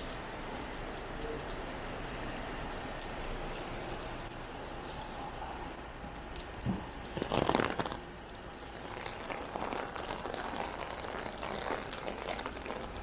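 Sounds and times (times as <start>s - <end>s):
rain falling on street: 0.0s - 13.0s
crinkling crackling burst: 6.4s - 13.0s.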